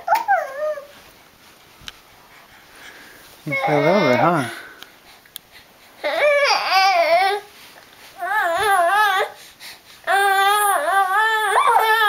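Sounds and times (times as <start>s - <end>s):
baby crying: 3.5s - 4.6s, 6.0s - 7.5s, 8.2s - 9.4s, 10.1s - 12.0s.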